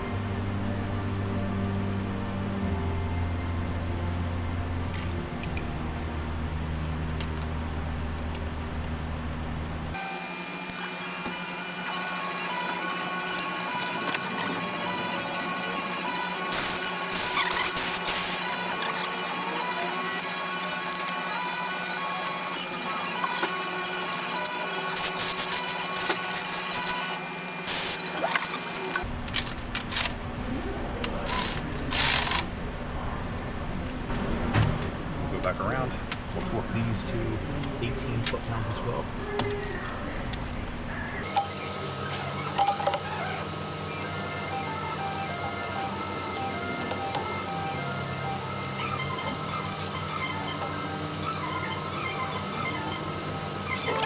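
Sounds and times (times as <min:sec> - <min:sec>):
steady hum: 0:00.0 - 0:29.2, 0:40.8 - 0:54.0
ratchet rasping bursts: 0:09.9 - 0:29.1, 0:31.3 - 0:32.5, 0:41.2 - 0:54.0
metal-on-metal tool noise: 0:10.0 - 0:29.1, 0:41.2 - 0:54.0
ratchet clicks: 0:10.6 - 0:29.1, 0:41.2 - 0:54.0.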